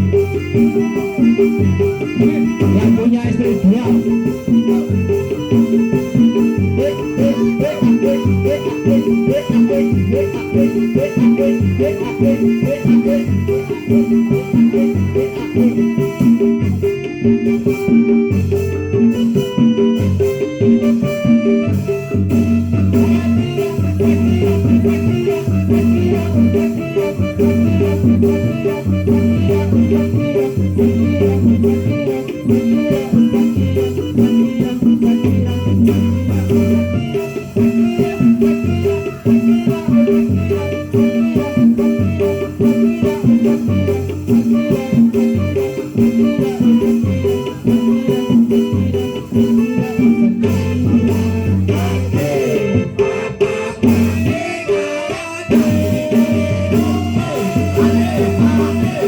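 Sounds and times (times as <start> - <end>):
instrumental music with bass line: 0.0 - 59.0.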